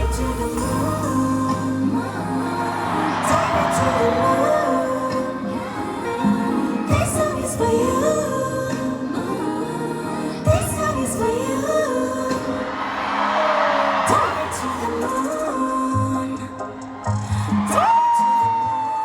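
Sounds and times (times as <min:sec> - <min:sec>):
live pop band playing: 0:00.0 - 0:13.1
rushing swell: 0:00.0 - 0:17.8
woman singing lead vocal: 0:00.0 - 0:19.0.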